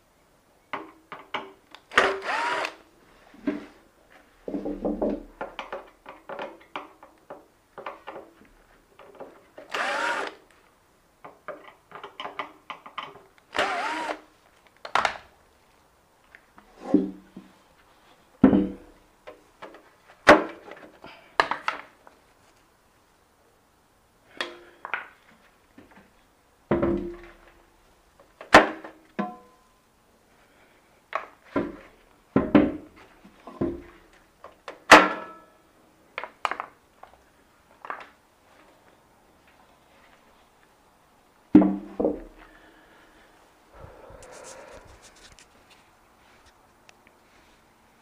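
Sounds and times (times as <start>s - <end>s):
tools and parts clicking and knocking: 0.7s - 2.4s, 4.9s - 8.3s, 8.9s - 10.4s, 11.2s - 14.2s
electric drill-driver whirring: 1.9s - 2.8s, 9.7s - 10.4s, 13.5s - 14.2s.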